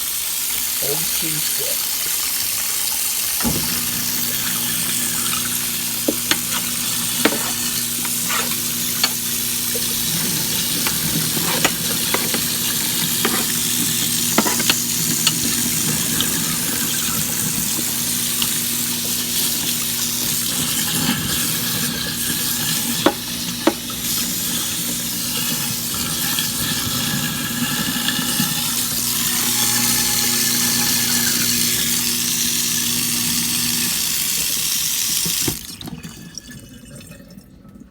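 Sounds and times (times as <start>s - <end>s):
running water: 0.0s - 37.8s
garbage disposal motor hum: 1.8s - 37.9s.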